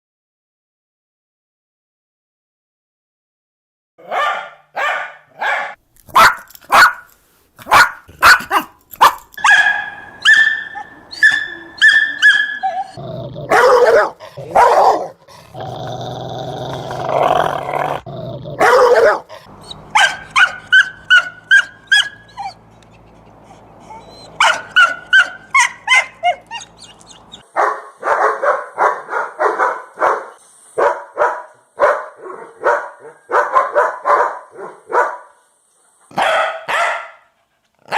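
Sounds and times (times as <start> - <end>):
high-pitched dog yaps: 4.0 - 15.1, 18.6 - 23.1, 23.8 - 35.2, 36.1 - 37.3
dogs barking: 4.0 - 15.3, 18.6 - 35.4, 36.1 - 37.9.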